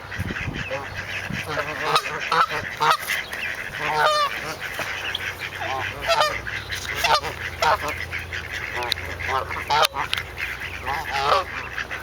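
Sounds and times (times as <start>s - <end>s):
ducks honking calls: 0.0s - 12.0s.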